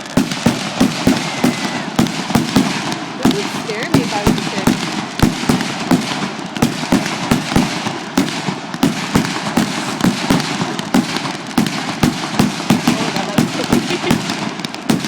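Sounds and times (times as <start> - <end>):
fireworks bursting with sharp bangs: 0.0 - 15.0
fireworks crackling: 0.0 - 15.0.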